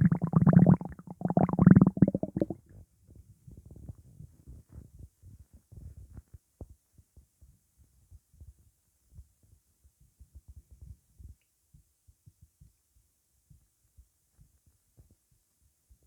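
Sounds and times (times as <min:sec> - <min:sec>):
stomach rumbling and gurgling: 0:00.0 - 0:02.7.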